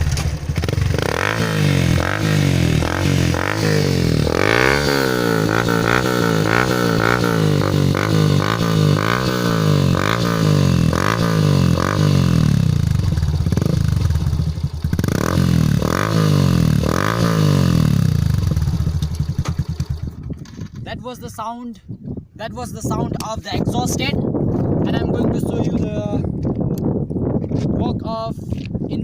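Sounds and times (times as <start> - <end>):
motorcycle engine revving: 0.0 - 20.8.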